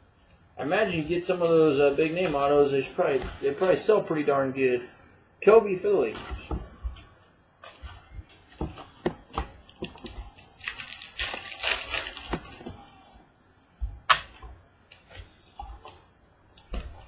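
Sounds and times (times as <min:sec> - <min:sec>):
crinkling rustle: 0:09.6 - 0:13.1.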